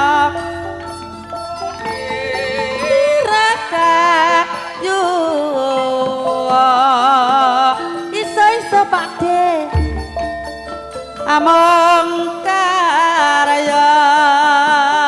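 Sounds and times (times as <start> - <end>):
woman singing with vibrato: 0.0 - 10.2, 11.2 - 15.0
sustained instrumental accompaniment: 0.0 - 13.5.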